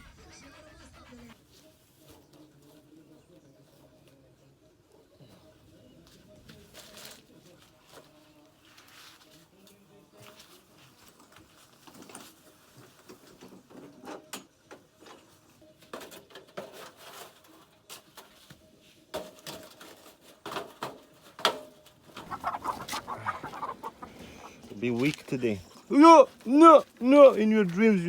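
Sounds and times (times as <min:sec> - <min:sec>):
chickens clucking: 0:22.0 - 0:26.0.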